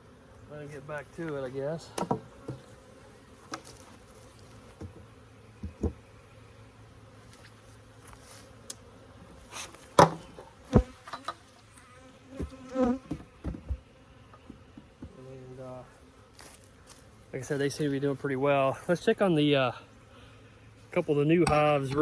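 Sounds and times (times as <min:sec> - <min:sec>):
honeybees buzzing: 0:00.0 - 0:22.0.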